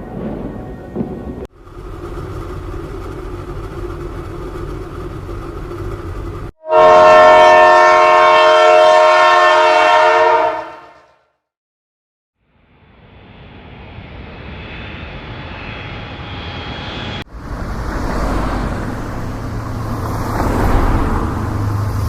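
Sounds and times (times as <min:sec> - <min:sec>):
train rumbling: 0:00.0 - 0:10.4, 0:12.8 - 0:22.0
train horn chord: 0:06.6 - 0:11.4.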